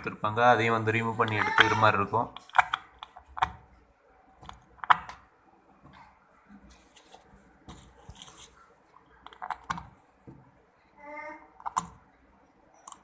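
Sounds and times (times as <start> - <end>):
sharp plastic clicks: 2.3 - 3.6.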